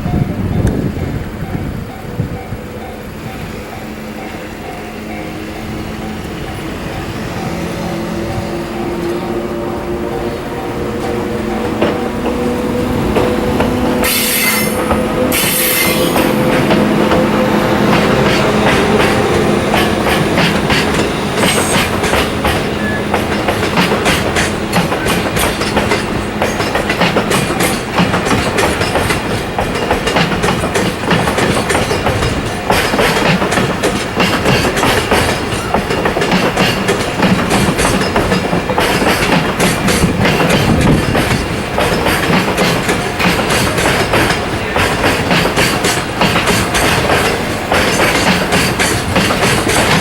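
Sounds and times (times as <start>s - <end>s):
wheels clicking over rail joints: 11.0s - 50.0s.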